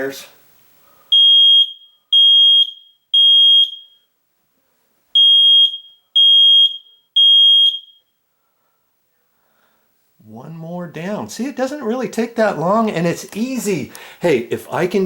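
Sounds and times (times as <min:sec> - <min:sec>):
smoke alarm beeps: 0:01.1 - 0:04.1, 0:05.1 - 0:08.2.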